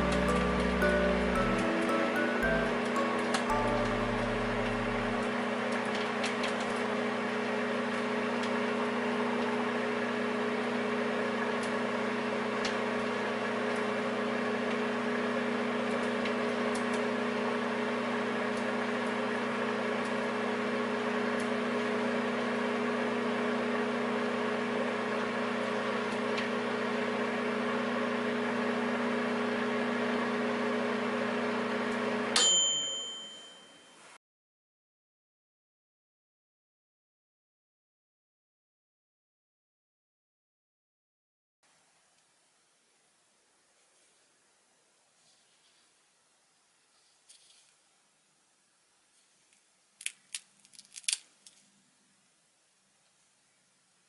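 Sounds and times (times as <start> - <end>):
microwave bell ding: 0.0 - 5.3, 32.3 - 34.0
microwave oven humming: 0.0 - 34.2.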